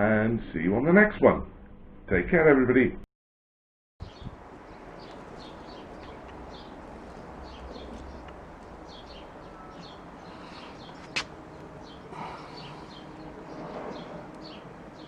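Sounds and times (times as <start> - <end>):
small birds chirping: 4.0 - 15.0.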